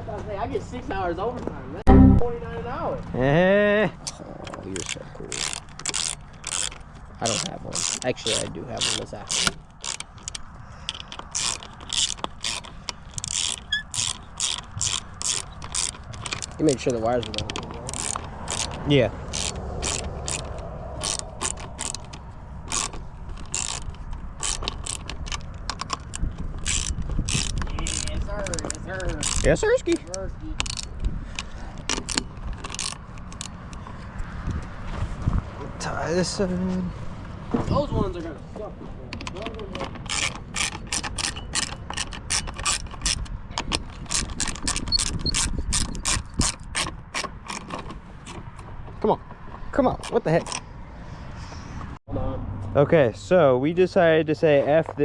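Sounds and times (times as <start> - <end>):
ratcheting clicks: 4.0 - 34.0, 39.2 - 48.7, 50.0 - 50.6.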